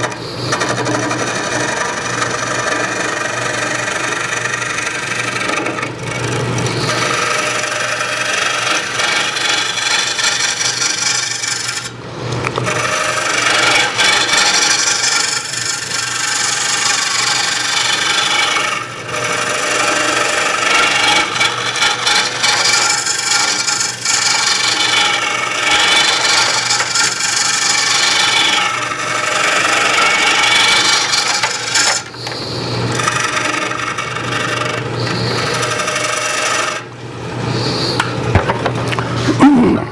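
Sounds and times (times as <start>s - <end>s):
turning tool rasping on wood: 0.0s - 12.0s, 12.6s - 38.0s
lathe hum: 0.0s - 38.2s.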